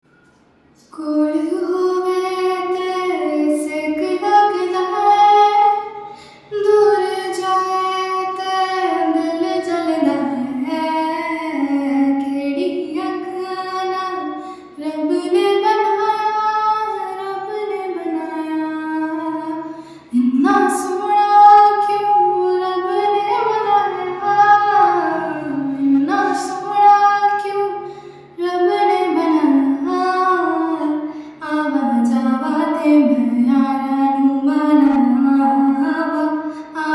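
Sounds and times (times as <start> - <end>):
high voice singing: 17.0 - 36.9.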